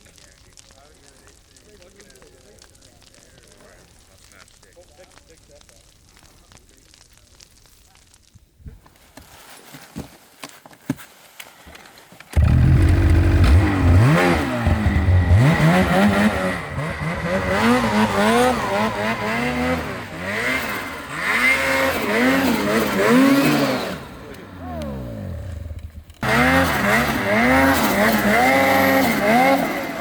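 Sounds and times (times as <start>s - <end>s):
snowmobile engine revving: 12.3s - 30.0s.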